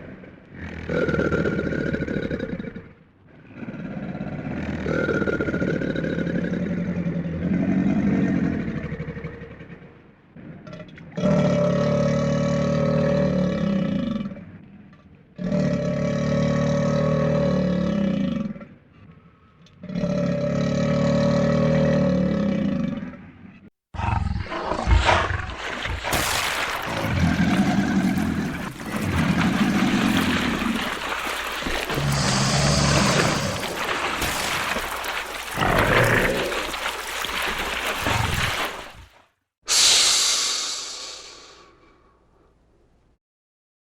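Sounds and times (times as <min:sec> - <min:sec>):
crocodile growling: 0:00.1 - 0:39.2
crocodile splashing in water: 0:24.5 - 0:41.5.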